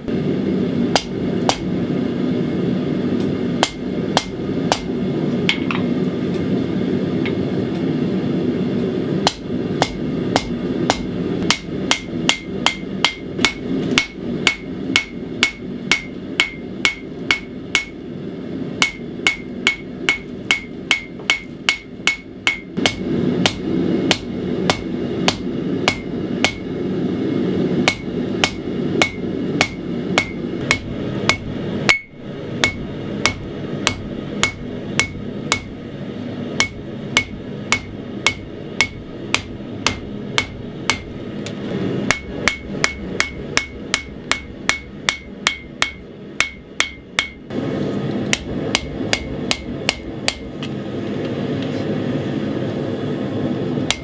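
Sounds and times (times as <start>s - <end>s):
hammer striking steel on anvil: 0.9s - 1.8s, 3.6s - 5.9s, 9.2s - 18.0s, 18.8s - 26.7s, 27.8s - 35.8s, 36.5s - 47.5s, 48.3s - 50.5s.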